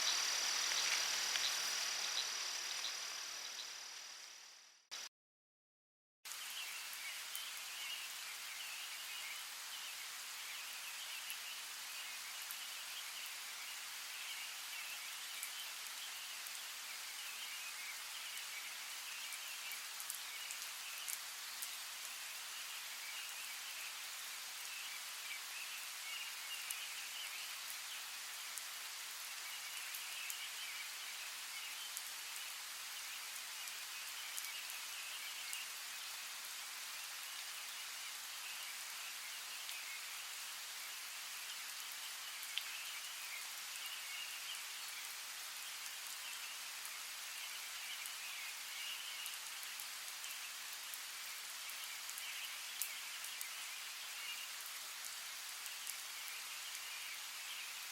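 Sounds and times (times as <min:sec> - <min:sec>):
rain falling: 0:00.0 - 0:05.1, 0:06.3 - 0:57.9.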